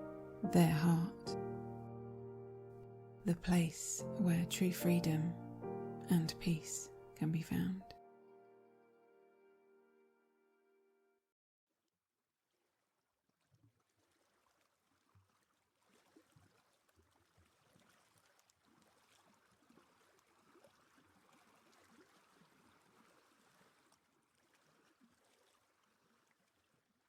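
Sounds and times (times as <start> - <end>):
faint flowing river water: 12.4 - 27.0.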